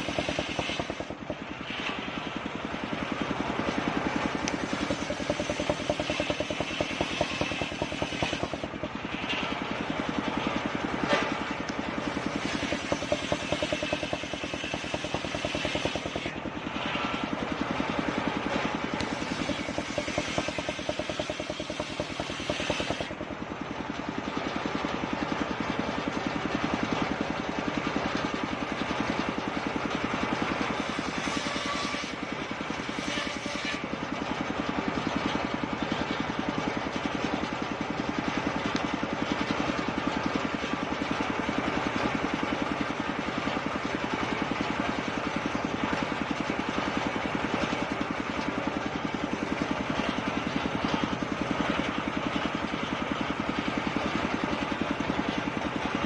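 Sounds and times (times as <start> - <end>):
circular saw cutting wood: 0.0 - 23.4, 30.6 - 34.1.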